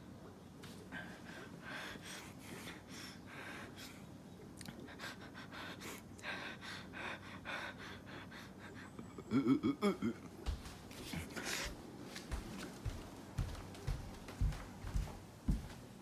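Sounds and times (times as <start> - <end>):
person breathing heavily: 9.8 - 14.6.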